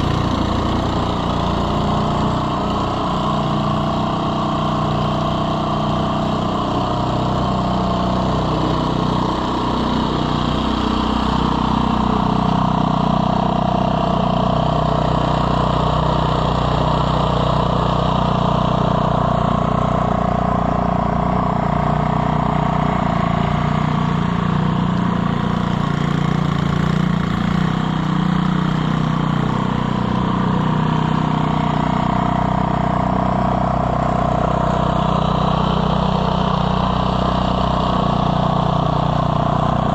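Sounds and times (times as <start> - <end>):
snowblower engine running: 0.0 - 39.9.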